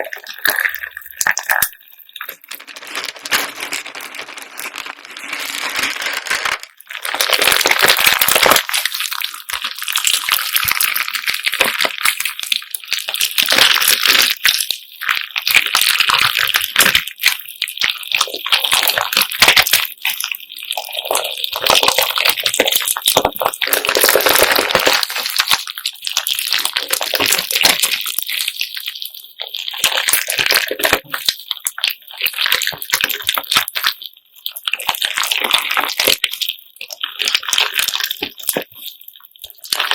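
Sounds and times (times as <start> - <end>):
slime squelching: 0.0 - 39.9
beads clicking and rattling: 0.4 - 7.6.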